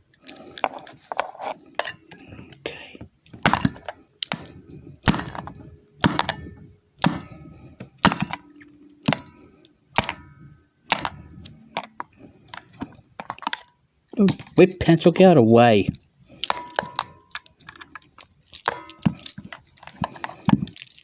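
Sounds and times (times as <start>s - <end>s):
light clattering of tools: 0.2s - 2.7s, 3.3s - 15.2s, 15.9s - 21.0s
sharp knocks: 3.4s - 12.0s, 16.5s - 17.4s.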